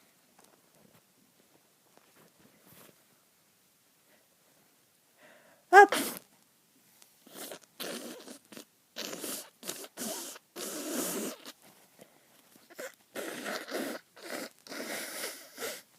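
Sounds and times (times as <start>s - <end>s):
person sneezing: 5.7s - 6.2s.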